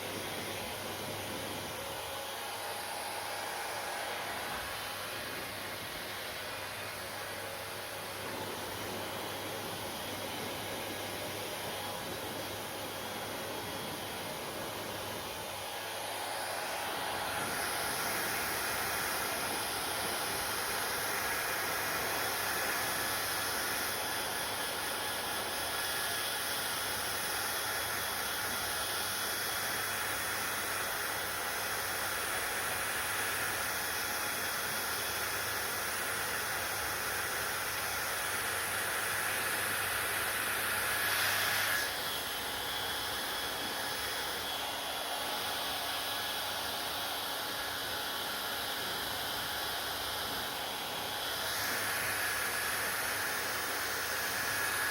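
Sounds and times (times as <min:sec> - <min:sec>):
hair dryer blowing: 0:00.0 - 0:54.9.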